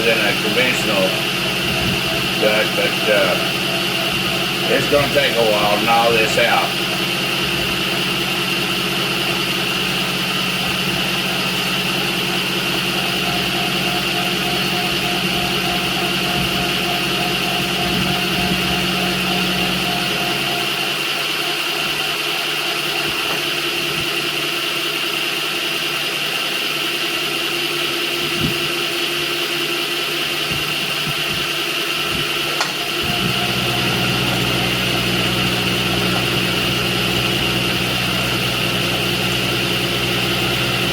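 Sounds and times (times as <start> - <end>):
low hum: 0.0 - 21.0, 32.0 - 40.9
milling machine cutting metal: 0.0 - 40.9.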